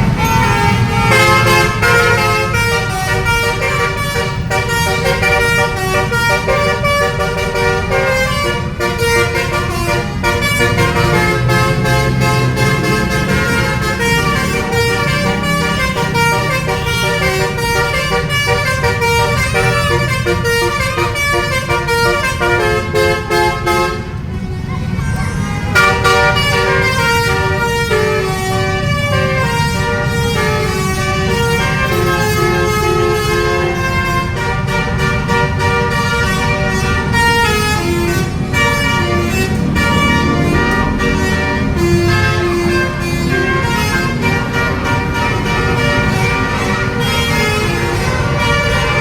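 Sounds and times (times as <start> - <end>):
bus engine running: 0.0 - 49.0
musical bus air horn: 0.0 - 49.0.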